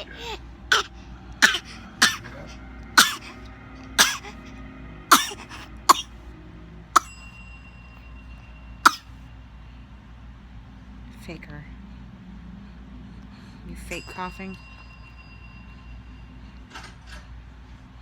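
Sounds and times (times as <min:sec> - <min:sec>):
baby coughing: 0:00.0 - 0:03.4, 0:04.0 - 0:04.4, 0:05.1 - 0:06.1.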